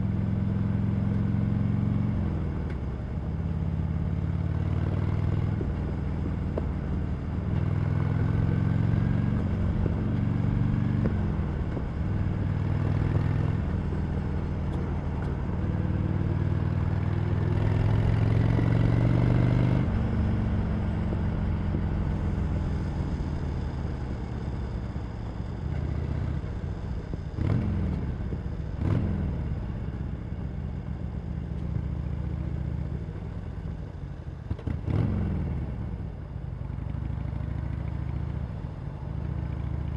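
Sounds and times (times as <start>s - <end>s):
motorcycle engine running: 0.0s - 39.9s
motorcycle throttle blips: 5.2s - 24.8s.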